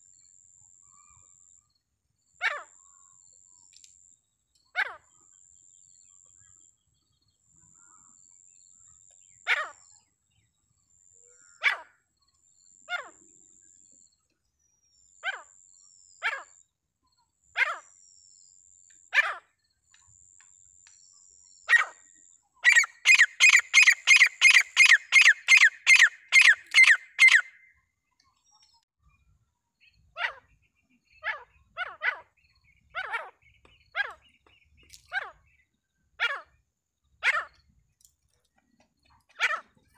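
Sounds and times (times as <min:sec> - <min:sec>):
francolin calling: 0:22.6 - 0:27.7.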